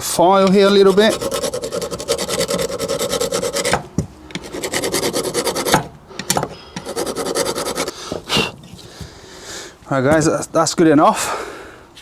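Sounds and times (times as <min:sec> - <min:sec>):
metal file scraping steel: 0:00.0 - 0:09.4.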